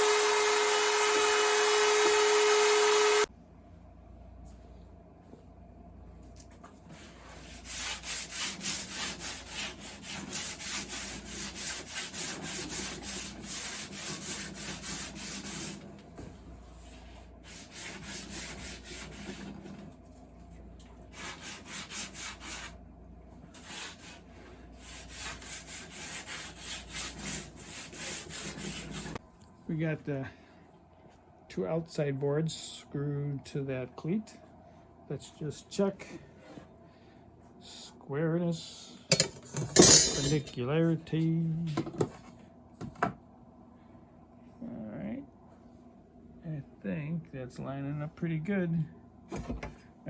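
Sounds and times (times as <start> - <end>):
tool working wooden boards: 0.0 - 3.3.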